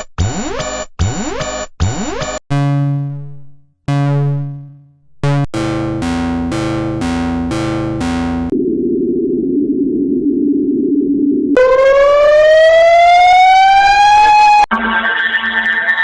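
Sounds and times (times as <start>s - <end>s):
alternating two-note alarm: 3.9s - 8.6s, 11.6s - 14.7s
buzzy siren tone: 3.9s - 16.0s
long synthesized alarm notes: 3.9s - 16.0s.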